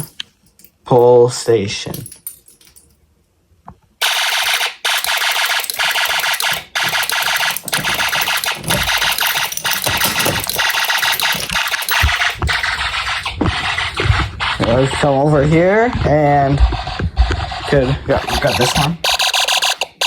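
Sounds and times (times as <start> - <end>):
fire alarm horn buzzing: 18.2 - 20.0.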